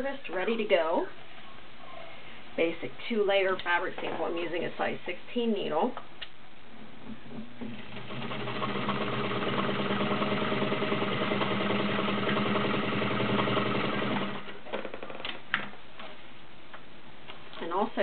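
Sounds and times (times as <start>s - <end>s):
sewing machine stitching: 7.7s - 14.6s.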